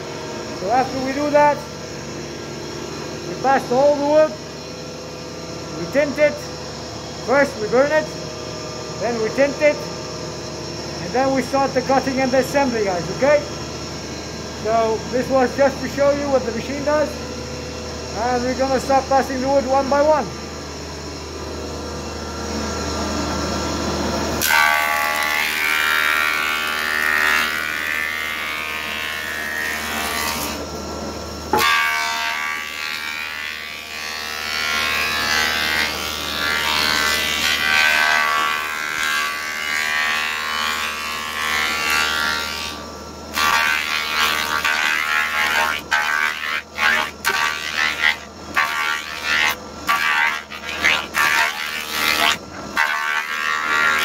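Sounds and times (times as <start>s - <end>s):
cutters planing wooden boards: 0.0s - 4.8s, 24.2s - 30.8s, 31.5s - 54.0s
woodworking machine whining: 0.0s - 54.0s.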